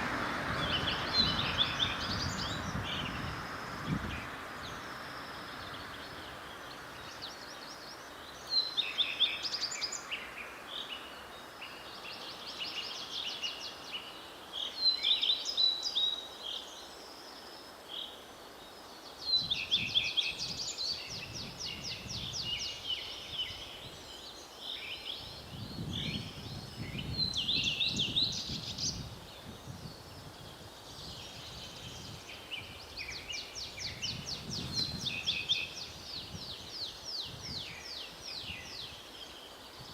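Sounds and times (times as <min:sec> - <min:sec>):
songbirds trilling and chirping: 0:00.0 - 0:39.9.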